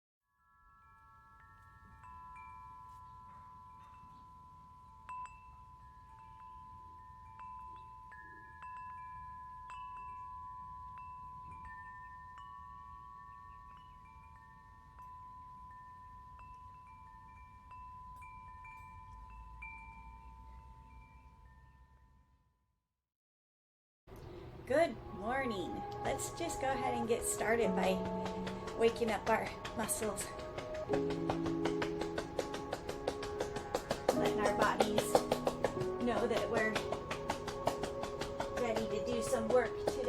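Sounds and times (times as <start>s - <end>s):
wind chimes ringing: 0.3s - 22.4s, 25.2s - 40.0s.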